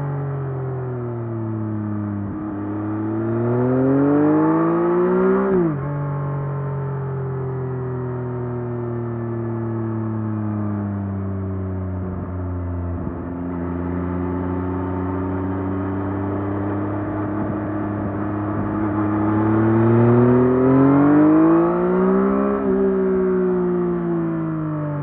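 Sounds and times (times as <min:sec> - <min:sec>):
motorcycle engine revving: 0:02.2 - 0:06.4, 0:12.0 - 0:25.0.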